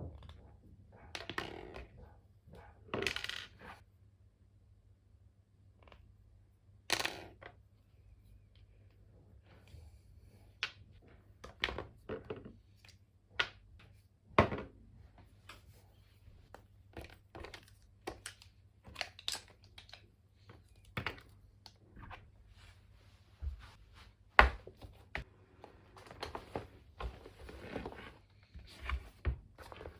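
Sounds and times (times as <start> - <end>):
rustles and crinkles of handling: 14.9 - 29.9.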